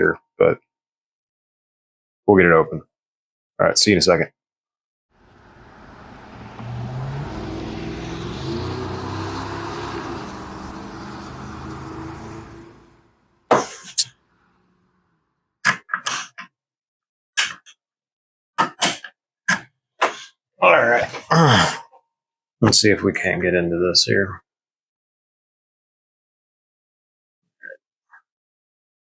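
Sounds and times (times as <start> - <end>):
motor vehicle passing: 5.2 - 15.1.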